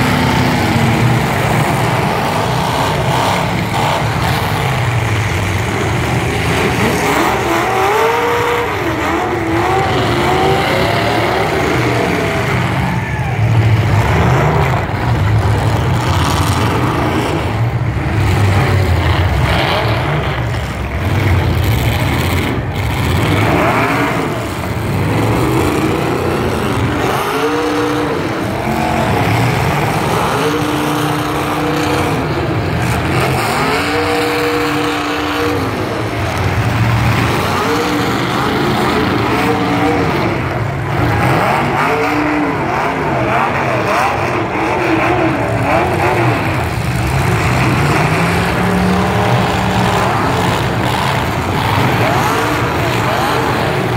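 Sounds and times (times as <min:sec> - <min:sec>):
truck engines revving: 0:00.0 - 0:53.9.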